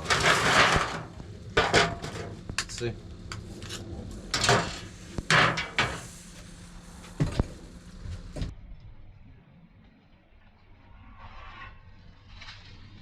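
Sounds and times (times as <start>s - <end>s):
metal lid clanking: 0.0s - 2.8s, 4.3s - 6.1s.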